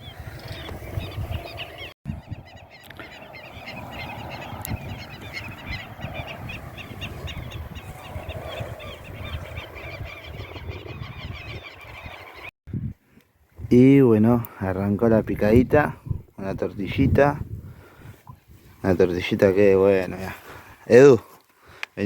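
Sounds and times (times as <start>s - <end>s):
chorus of birds calling: 0.0s - 12.5s.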